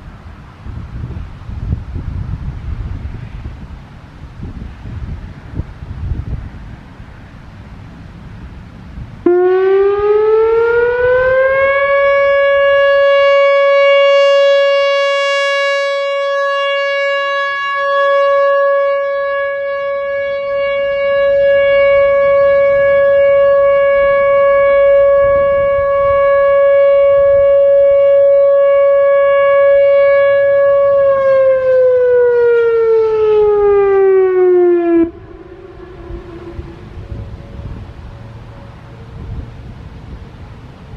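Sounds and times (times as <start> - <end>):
electronic warning siren steady tone: 9.2 - 39.5.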